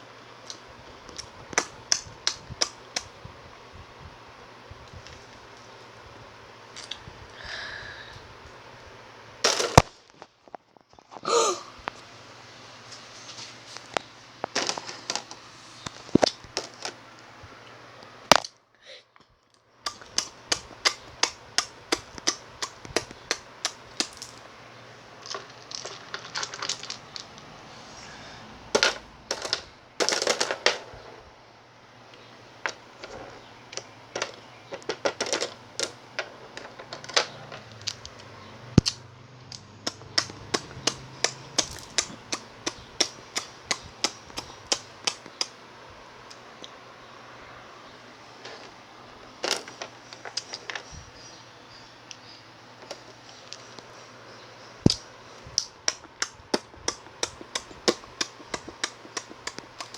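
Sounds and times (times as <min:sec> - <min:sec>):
mock eating crunching clicks: 0:00.4 - 0:03.2, 0:06.7 - 0:07.1, 0:19.2 - 0:24.5, 0:25.1 - 0:27.5, 0:32.1 - 0:45.6, 0:54.8 - 0:59.9.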